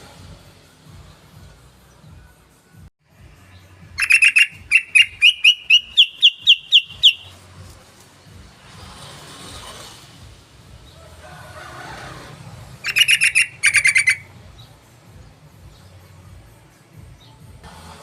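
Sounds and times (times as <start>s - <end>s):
bird singing: 3.5s - 7.4s, 12.8s - 16.1s.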